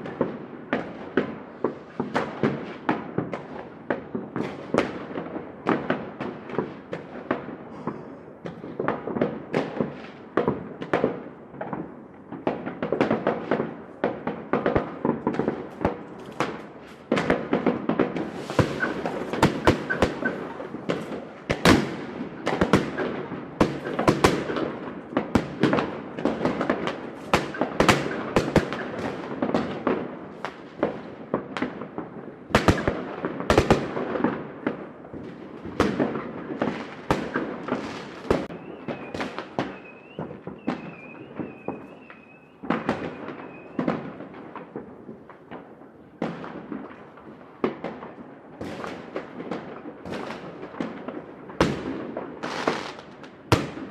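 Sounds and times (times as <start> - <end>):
fireworks bangs and pops: 0.0 - 53.9
hissing crackle: 18.2 - 21.2.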